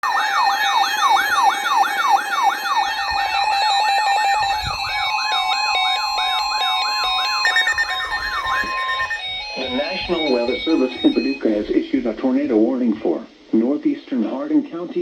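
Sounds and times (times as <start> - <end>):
electronic siren sweeping up and down: 0.0 - 12.1
steady tone: 1.0 - 12.4.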